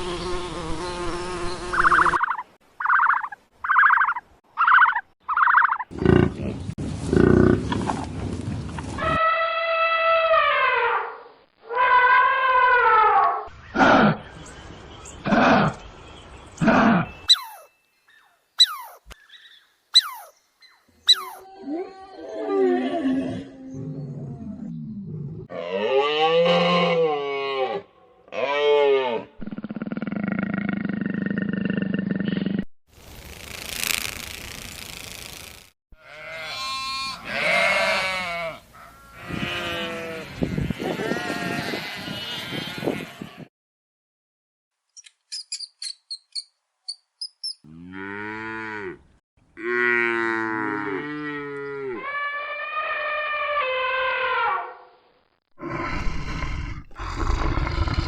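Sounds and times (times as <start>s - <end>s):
animal calls rising and falling: 0.2s - 6.0s, 17.3s - 17.7s, 18.6s - 19.0s, 20.0s - 20.4s, 21.0s - 24.6s, 51.8s - 54.9s
steady high-pitched animal call: 17.2s - 17.7s, 18.6s - 19.0s, 20.0s - 20.3s, 21.1s - 23.8s
cow mooing: 47.7s - 49.0s, 49.6s - 52.0s
animal rasping growl: 55.6s - 58.0s.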